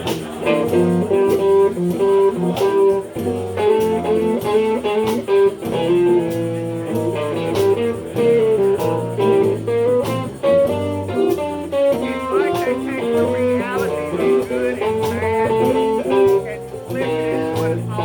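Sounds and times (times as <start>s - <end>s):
blues band playing: 0.0s - 18.0s
guitar lines: 0.0s - 18.0s.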